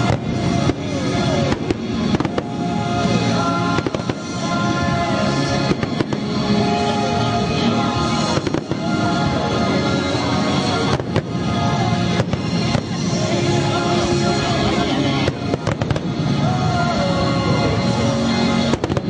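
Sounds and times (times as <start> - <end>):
fireworks bursting: 0.0 - 19.0
loud music: 0.0 - 19.0.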